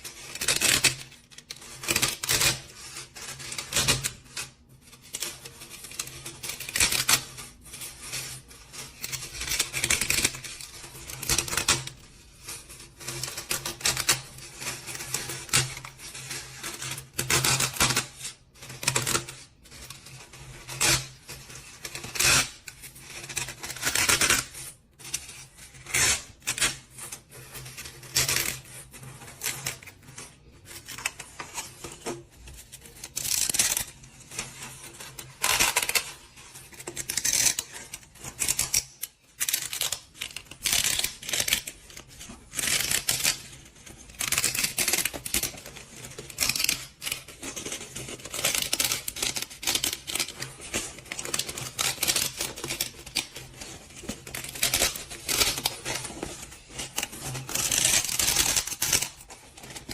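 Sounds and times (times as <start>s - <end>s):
scraping rustling and clicking: 0.0s - 59.9s.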